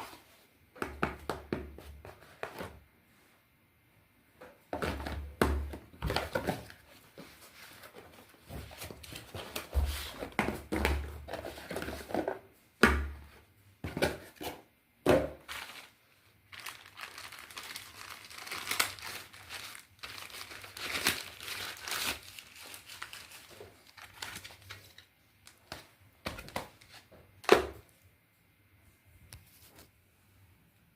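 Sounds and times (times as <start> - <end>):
packaging crinkling: 15.5 - 25.6.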